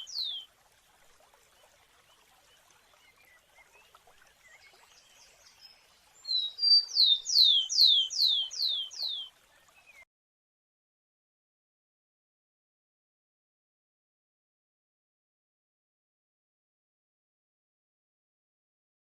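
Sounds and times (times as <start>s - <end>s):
sparrow singing: 0.0s - 0.4s, 6.2s - 9.3s.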